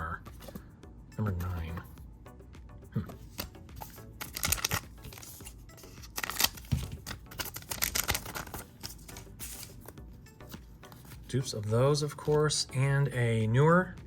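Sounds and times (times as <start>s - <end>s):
wrapper tearing and crinkling: 4.2s - 5.3s, 6.0s - 9.2s.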